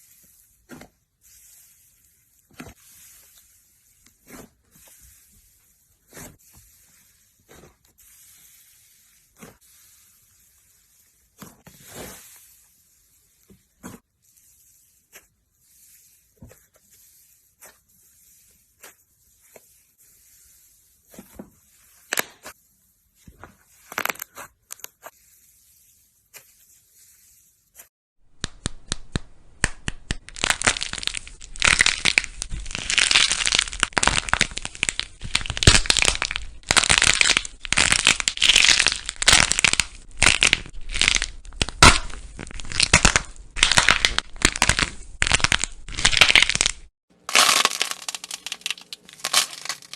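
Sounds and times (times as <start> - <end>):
slime squeezed by hand: 30.2 - 49.9.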